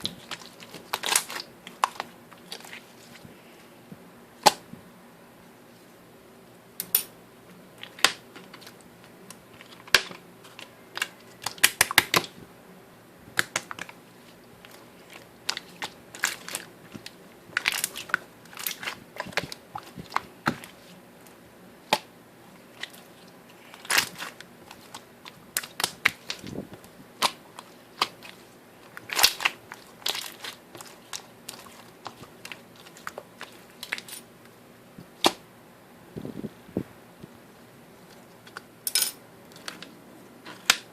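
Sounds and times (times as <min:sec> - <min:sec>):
slime popping and crackling: 0:23.8 - 0:26.5, 0:27.2 - 0:34.1.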